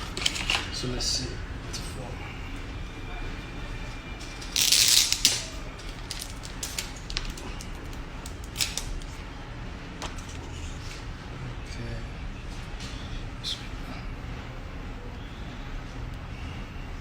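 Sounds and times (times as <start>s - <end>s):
packaging rustling: 0.0s - 0.8s, 4.2s - 9.2s.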